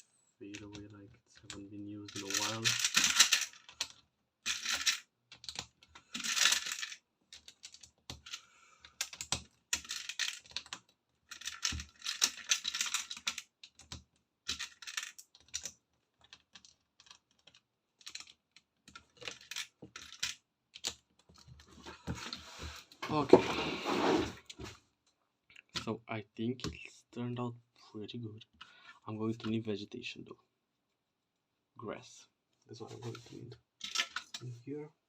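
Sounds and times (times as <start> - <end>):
plastic toy bricks clattering: 2.1 - 8.4, 9.0 - 10.7, 11.3 - 13.8, 14.4 - 21.0, 33.8 - 34.4.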